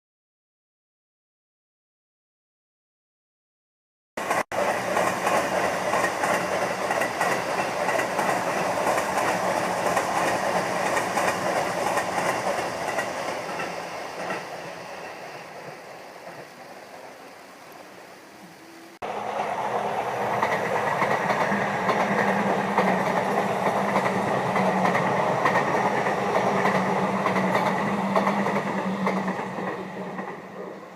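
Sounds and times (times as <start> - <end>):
train wheels clacking on rail joints: 4.2 - 16.5, 19.2 - 30.9
electric train passing: 4.2 - 30.9.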